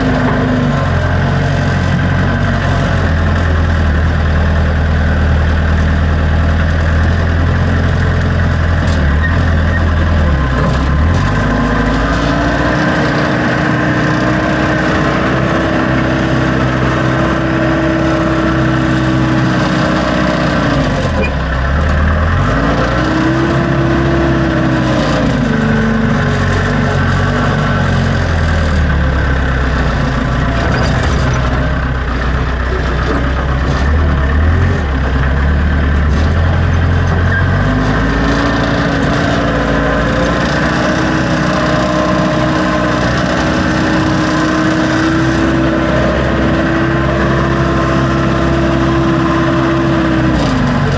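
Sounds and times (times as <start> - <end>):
backhoe engine idling and revving: 0.0 - 50.9.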